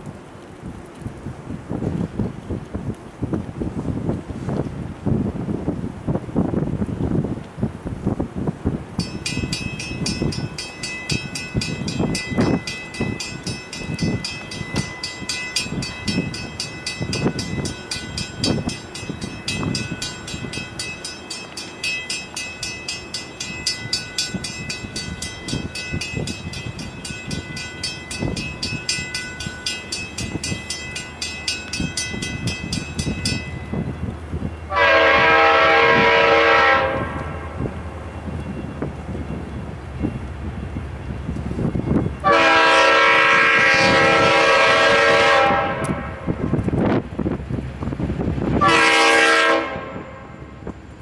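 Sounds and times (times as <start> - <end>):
high-pitched metallic rattle: 9.0 - 33.8
locomotive air horn chord: 34.7 - 37.7, 42.2 - 46.4, 48.6 - 50.6.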